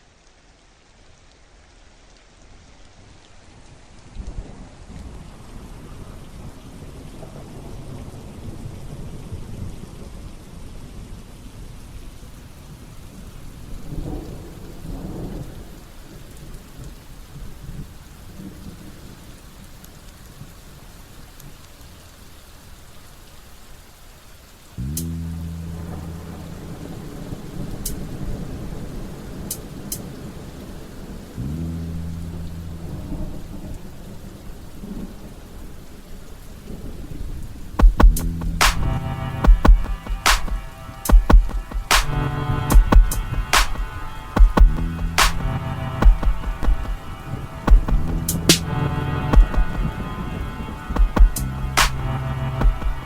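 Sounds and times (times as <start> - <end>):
steady rain: 0.0 - 53.0
music beat: 24.8 - 27.0, 37.8 - 53.0
heavy bass hit: 24.8 - 27.2, 31.4 - 33.4, 37.8 - 50.0, 51.0 - 53.0
low droning tone sliding up: 24.8 - 27.6, 31.4 - 33.8, 37.8 - 53.0.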